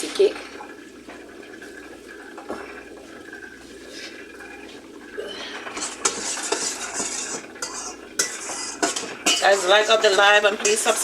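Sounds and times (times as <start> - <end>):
kitchen background: 0.0 - 11.0
metal spoon scraping a bowl: 5.8 - 9.6.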